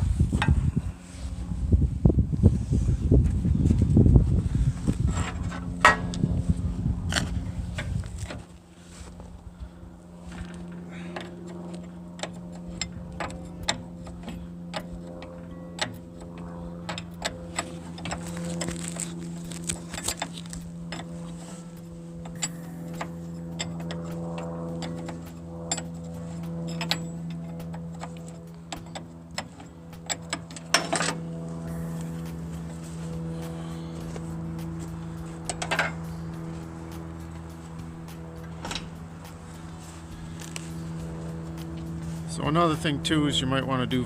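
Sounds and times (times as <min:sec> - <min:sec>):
low hum: 0:00.0 - 0:44.0
metallic clicks and knocks of tools: 0:26.7 - 0:31.2.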